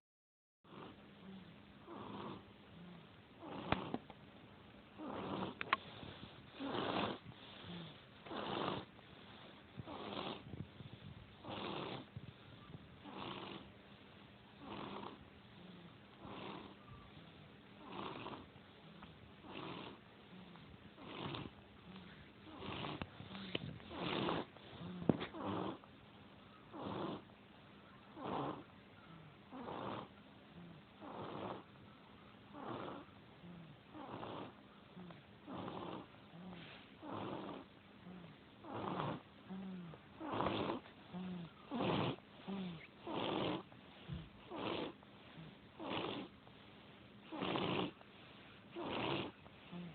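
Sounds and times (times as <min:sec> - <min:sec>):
heavy snoring: 0:00.7 - 0:04.0, 0:05.0 - 0:09.0, 0:09.7 - 0:10.7, 0:11.4 - 0:12.2, 0:13.0 - 0:13.7, 0:14.6 - 0:16.8, 0:17.8 - 0:25.9, 0:26.7 - 0:27.3, 0:28.2 - 0:28.7, 0:29.5 - 0:31.7, 0:32.5 - 0:46.4, 0:47.3 - 0:48.0, 0:48.7 - 0:49.9.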